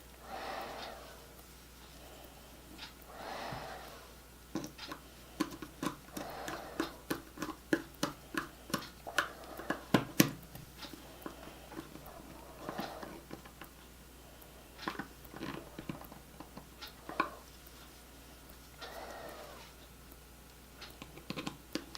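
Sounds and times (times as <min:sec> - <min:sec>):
sharp clicks and taps: 0:04.5 - 0:13.9, 0:20.1 - 0:21.9.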